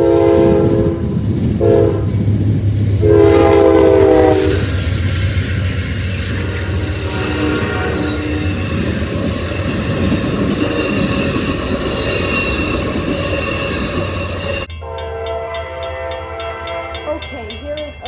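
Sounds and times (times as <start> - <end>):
train horn chord: 0.0 - 2.2, 3.0 - 5.1, 6.3 - 11.4, 14.5 - 17.4
train rumbling past: 0.0 - 18.0
train wheels squealing: 2.8 - 14.8.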